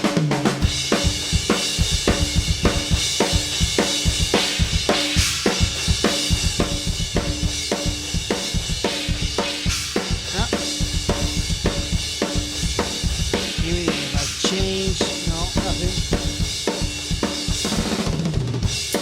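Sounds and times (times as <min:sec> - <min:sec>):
cymbals: 0:00.0 - 0:19.0
heavy metal music: 0:00.6 - 0:18.0
distorted instruments: 0:10.1 - 0:16.5.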